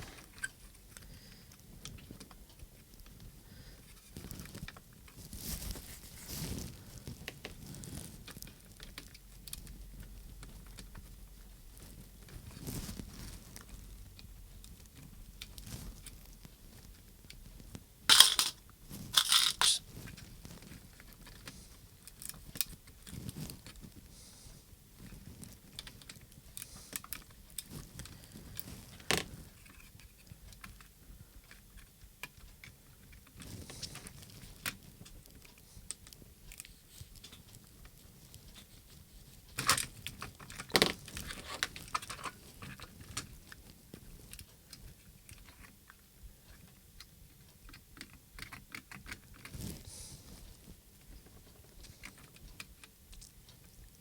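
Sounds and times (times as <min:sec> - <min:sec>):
plastic case clicking and rattling: 0:18.1 - 0:18.6, 0:19.2 - 0:19.8.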